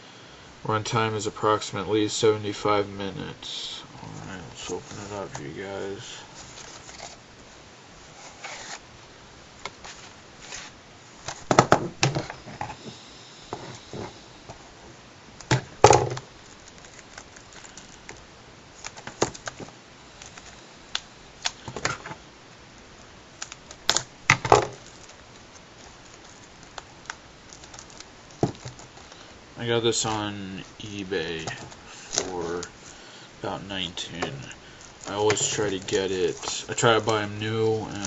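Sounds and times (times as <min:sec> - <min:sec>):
plastic packaging crinkling: 0:15.4 - 0:38.0.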